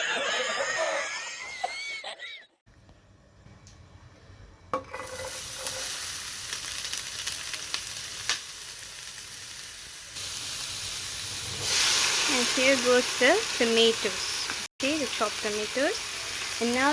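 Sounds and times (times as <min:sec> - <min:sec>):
onion sizzling in oil: 0:04.9 - 0:16.9.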